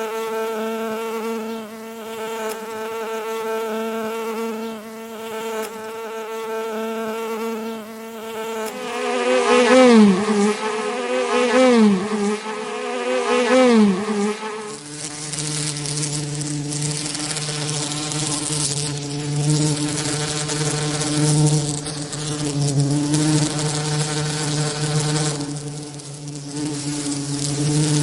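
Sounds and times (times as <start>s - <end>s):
bee buzzing: 0.0s - 28.0s.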